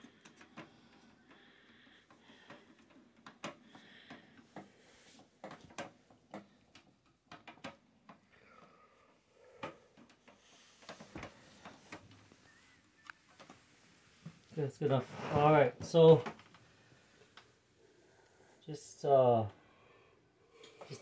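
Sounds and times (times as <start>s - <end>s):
clicks and knocks of computer parts: 7.3s - 8.2s.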